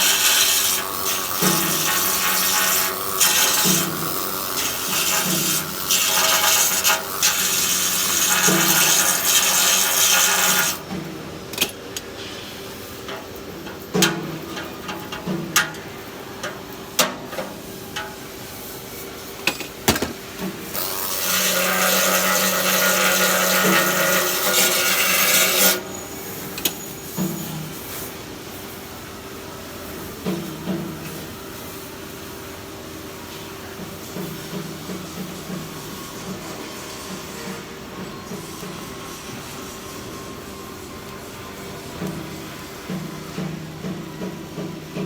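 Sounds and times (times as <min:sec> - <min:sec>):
welding arc sizzling hiss: 0:00.0 - 0:29.0.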